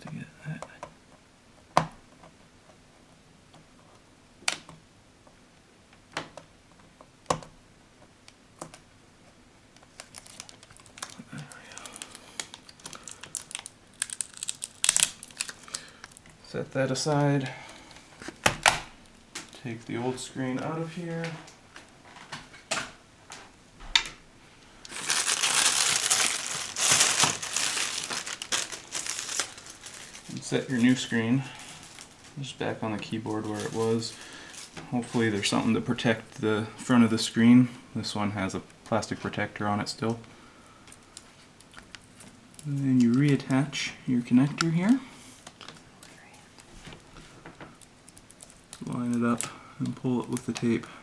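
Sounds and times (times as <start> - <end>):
plastic packaging crinkling: 9.7 - 22.3, 24.6 - 51.0.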